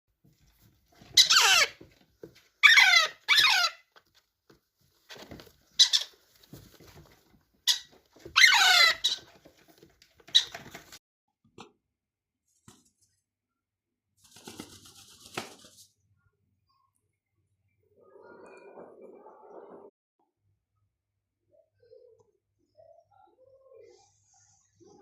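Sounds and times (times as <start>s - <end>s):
parakeet shrill squawks: 1.2s - 1.8s, 2.6s - 3.8s, 7.7s - 9.3s.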